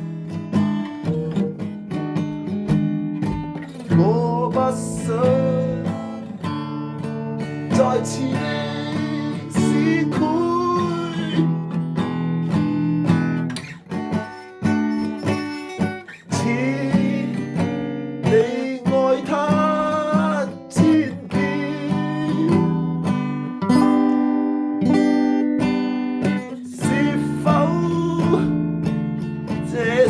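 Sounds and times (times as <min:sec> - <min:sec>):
acoustic guitar plucked and strummed: 0:00.0 - 0:30.0
person singing: 0:03.9 - 0:06.4, 0:07.5 - 0:11.6, 0:16.1 - 0:23.0, 0:26.3 - 0:28.7, 0:29.5 - 0:30.0.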